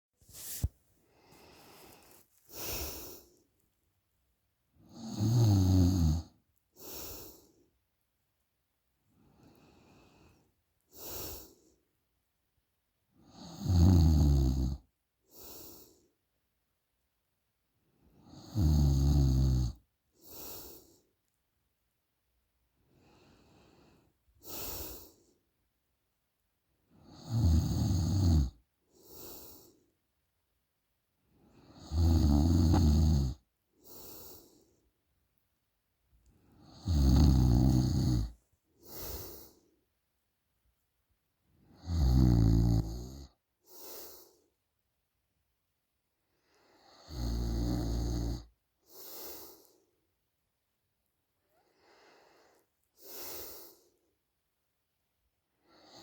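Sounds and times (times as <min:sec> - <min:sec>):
soft breathing: 0:00.2 - 0:03.7, 0:33.8 - 0:34.9, 0:38.2 - 0:39.9, 0:48.9 - 0:50.0, 0:51.5 - 0:54.2
woman snoring: 0:04.9 - 0:06.3, 0:13.3 - 0:14.8, 0:18.3 - 0:19.8, 0:27.1 - 0:28.6, 0:31.7 - 0:34.4, 0:36.7 - 0:39.5, 0:41.8 - 0:44.2, 0:47.0 - 0:49.5
noisy breathing: 0:38.8 - 0:39.7, 0:48.9 - 0:49.8, 0:51.7 - 0:54.0.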